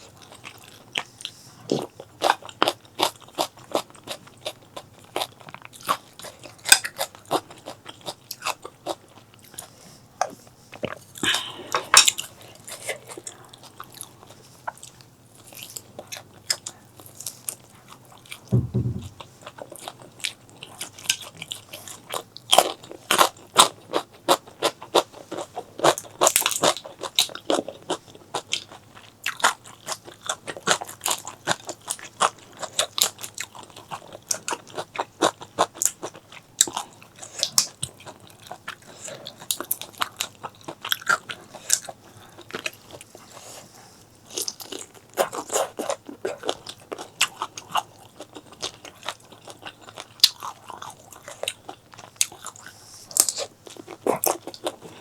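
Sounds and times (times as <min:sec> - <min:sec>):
person chewing food: 0:00.0 - 0:55.0
low thud: 0:18.5 - 0:19.2.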